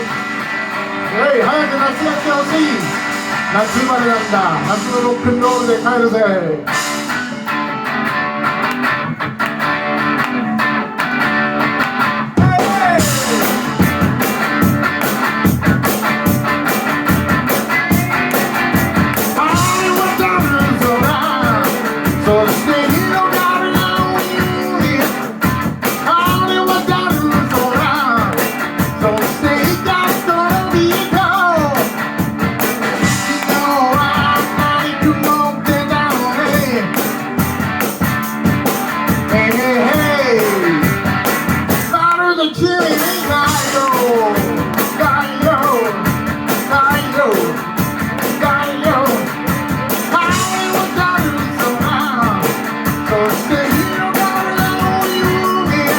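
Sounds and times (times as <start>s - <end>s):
rock band playing: 0.0s - 55.9s
guitar bending sliding notes: 6.7s - 24.7s.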